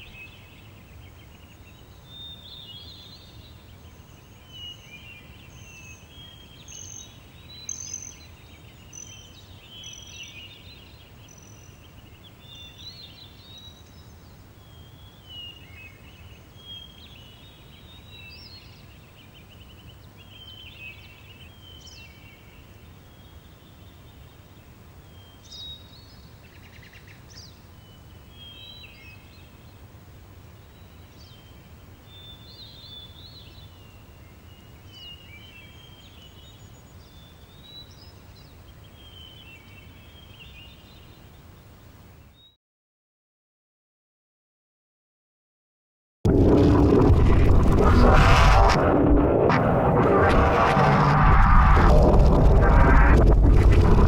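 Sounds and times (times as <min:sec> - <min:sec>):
steady low rumble: 0:46.3 - 0:54.0.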